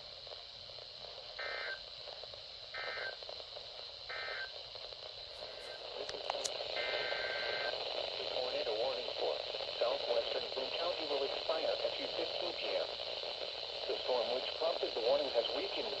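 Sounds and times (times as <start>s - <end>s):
radio hiss: 0.0s - 16.0s
buzzy two-tone data bursts: 1.4s - 1.9s, 2.7s - 3.2s, 4.0s - 4.6s, 6.7s - 7.9s.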